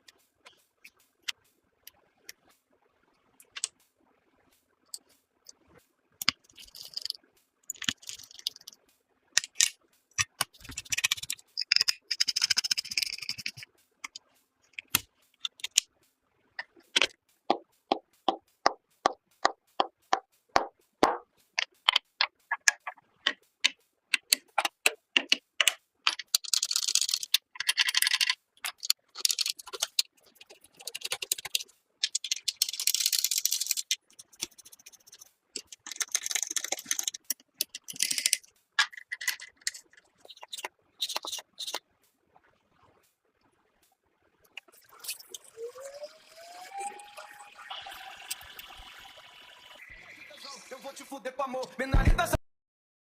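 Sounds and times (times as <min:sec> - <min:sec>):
sharp clicks and taps: 0:09.4 - 0:15.9, 0:16.6 - 0:41.8.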